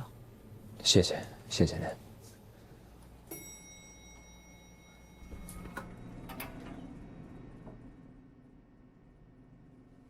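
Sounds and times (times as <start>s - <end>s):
elevator chime tone: 3.3s - 7.6s
elevator doors clicking and knocking: 5.2s - 7.0s.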